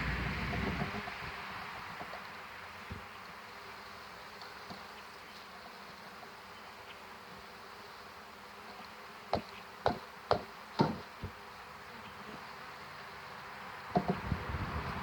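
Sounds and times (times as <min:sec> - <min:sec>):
honey bees buzzing: 0:00.0 - 0:15.0
sharp knocks: 0:09.3 - 0:11.4.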